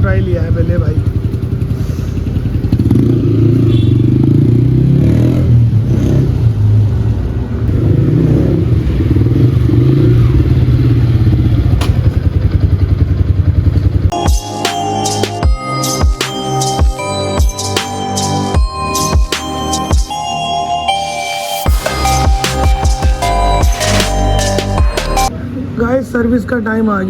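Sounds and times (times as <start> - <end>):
motorcycle engine revving: 0.0 - 14.2, 21.7 - 25.3.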